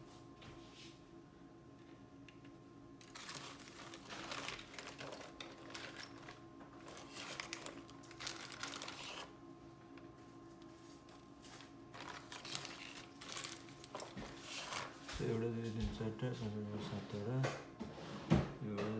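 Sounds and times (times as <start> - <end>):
crinkling and rustling: 3.0 - 17.4.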